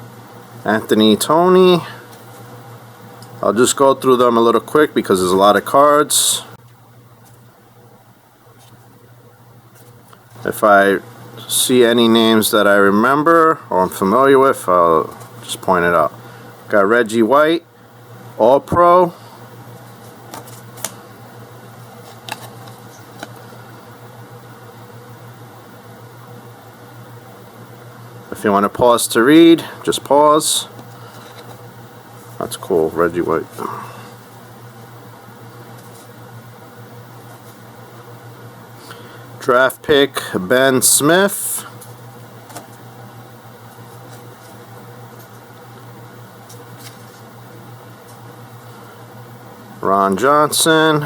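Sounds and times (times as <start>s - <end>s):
low background hum: 0.0s - 51.0s
trading cards being flipped: 20.0s - 21.0s, 22.0s - 23.5s.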